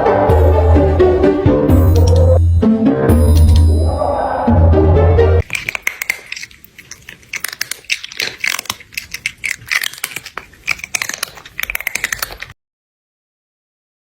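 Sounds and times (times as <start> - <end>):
sharp crunching clicks: 5.4 - 12.6.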